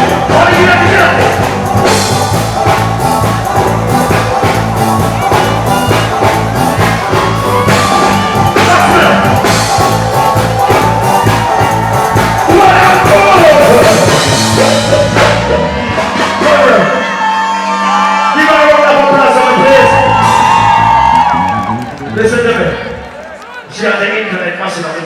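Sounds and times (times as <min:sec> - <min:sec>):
loud dance music with singing: 0:00.0 - 0:16.9.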